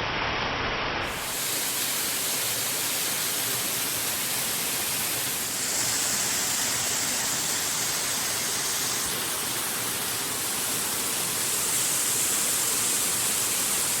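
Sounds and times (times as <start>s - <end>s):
waterfall splashing onto rock: 1.0s - 14.0s.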